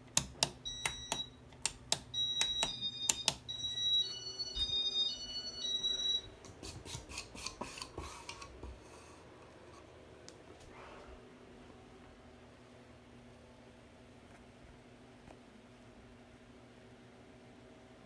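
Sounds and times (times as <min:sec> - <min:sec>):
sharp clicks: 0:00.2 - 0:03.5.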